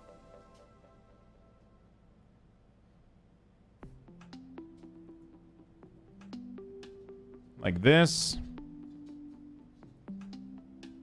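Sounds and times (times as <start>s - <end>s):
slow single-note background music: 0.0s - 2.1s, 3.8s - 11.0s.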